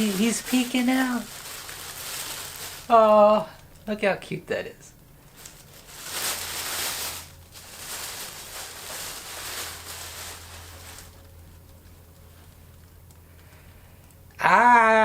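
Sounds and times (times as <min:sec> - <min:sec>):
plastic bag rustling: 0:00.0 - 0:03.8, 0:05.2 - 0:13.1.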